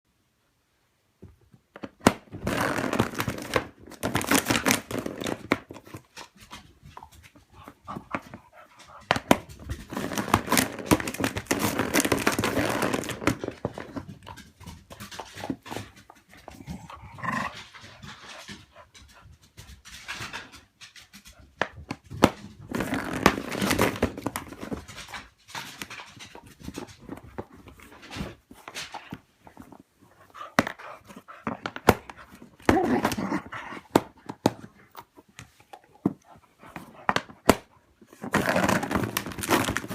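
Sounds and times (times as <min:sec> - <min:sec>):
dog panting hard: 0:18.2 - 0:19.8.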